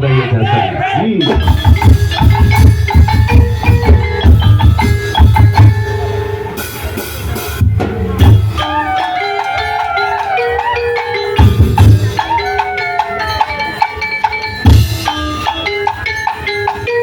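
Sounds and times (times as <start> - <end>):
wood-block knocks: 1.2 - 6.0
deep drums beating fast: 1.2 - 9.0, 9.8 - 12.5
wavering melody: 1.2 - 17.0.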